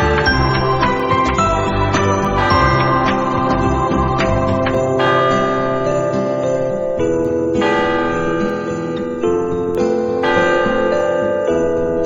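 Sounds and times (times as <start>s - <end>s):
steady bass line: 0.0s - 6.0s
glockenspiel-style melody: 0.0s - 12.0s.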